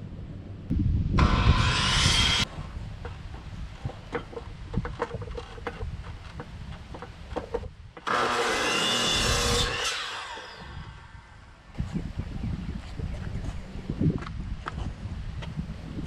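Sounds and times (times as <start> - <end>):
power tool whirring: 1.2 - 2.5, 8.0 - 11.3.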